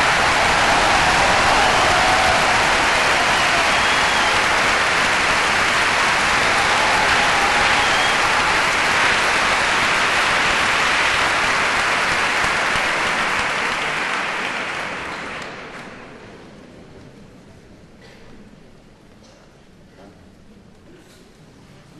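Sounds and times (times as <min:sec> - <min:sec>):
audience applause: 0:00.0 - 0:16.2.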